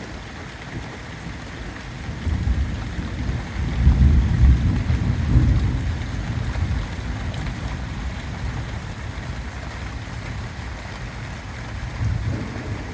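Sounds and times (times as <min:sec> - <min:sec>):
rain hiss: 0:00.0 - 0:12.9
thunder rumble: 0:11.8 - 0:12.9.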